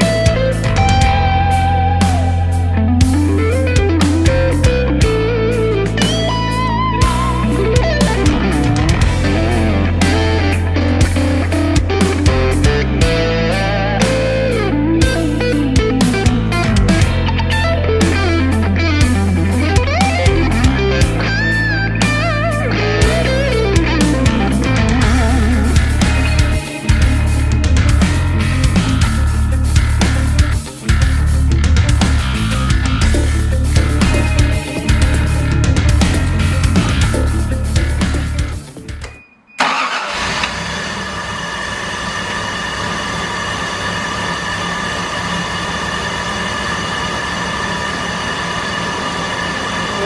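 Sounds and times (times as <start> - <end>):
sustained bass notes: 0.0 - 40.2
electric guitar lead line: 0.0 - 50.0
motor vehicle running: 22.8 - 39.1
drum hits: 23.8 - 39.2.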